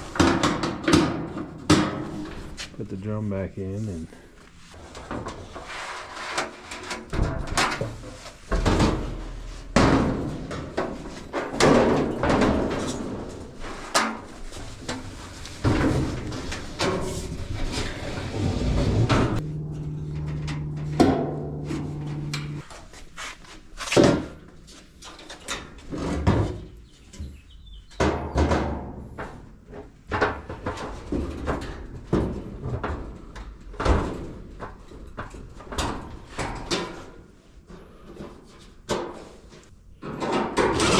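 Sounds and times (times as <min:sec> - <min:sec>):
sheet metal clunks and scraping: 0:00.0 - 0:02.7, 0:04.7 - 0:22.7, 0:37.8 - 0:40.9
short steady hum: 0:19.1 - 0:22.6.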